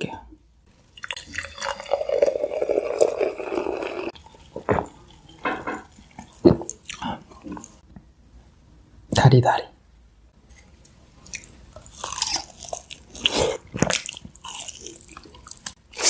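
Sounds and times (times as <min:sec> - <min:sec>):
drink pouring into glass: 0:01.0 - 0:06.0
person gulping: 0:01.4 - 0:06.8.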